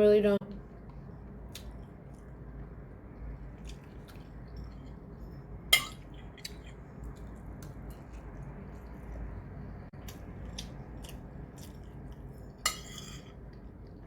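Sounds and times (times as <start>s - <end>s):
steady low hum: 0.0s - 14.0s
faint chewing: 3.4s - 12.6s
cutlery clinking against dish: 12.7s - 13.3s.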